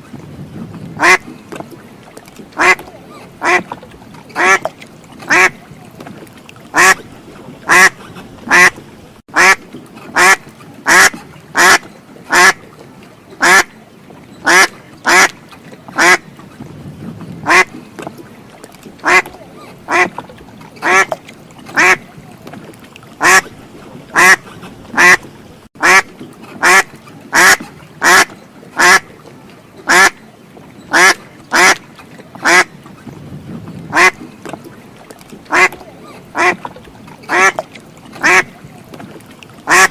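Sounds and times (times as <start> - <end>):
duck quacking: 1.0 - 1.2, 2.6 - 2.8, 3.4 - 3.6, 4.4 - 4.7, 5.3 - 5.6, 6.7 - 7.0, 7.7 - 9.6, 10.2 - 12.6, 13.4 - 13.7, 14.4 - 15.3, 16.0 - 16.2, 17.4 - 17.7, 19.0 - 20.1, 20.8 - 21.2, 21.8 - 22.1, 23.2 - 23.5, 24.2 - 24.4, 25.0 - 25.2, 25.8 - 26.0, 26.6 - 29.0, 29.9 - 30.2, 30.9 - 31.8, 32.4 - 32.7, 33.9 - 34.2, 35.5 - 35.8, 36.4 - 36.6, 37.3 - 37.6, 38.2 - 38.5, 39.7 - 39.9.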